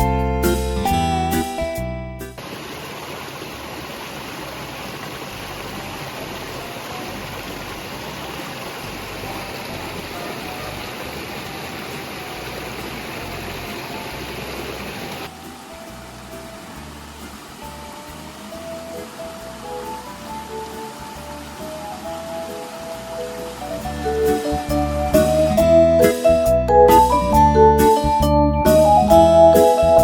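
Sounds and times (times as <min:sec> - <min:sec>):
flowing stream: 0:02.4 - 0:26.2.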